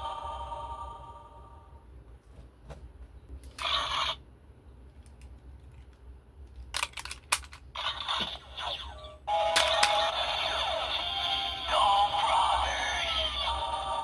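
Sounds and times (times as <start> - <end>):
plastic toy mechanism clicks: 6.5 - 7.7, 9.5 - 10.0
electronic toy sound effects: 7.8 - 14.0.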